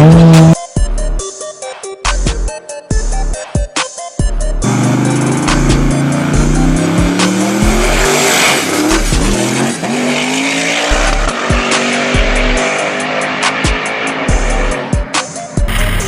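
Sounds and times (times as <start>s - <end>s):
car engine accelerating hard: 0.0s - 0.6s, 4.6s - 16.0s
thumping hip-hop beat: 0.0s - 9.6s, 10.8s - 16.0s.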